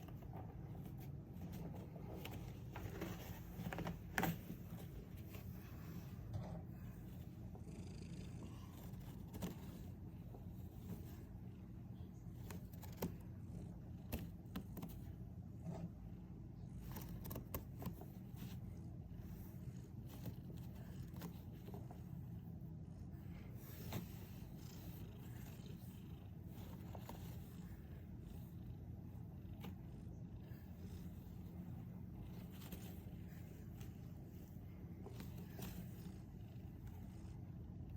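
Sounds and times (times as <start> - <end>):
pet snoring softly: 7.5 - 9.0.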